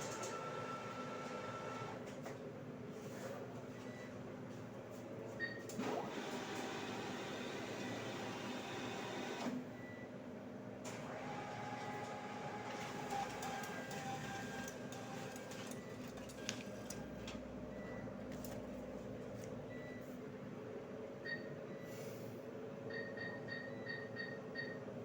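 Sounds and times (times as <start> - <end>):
atm mechanism whirring: 0.0 - 2.0, 5.8 - 9.6, 10.9 - 19.4.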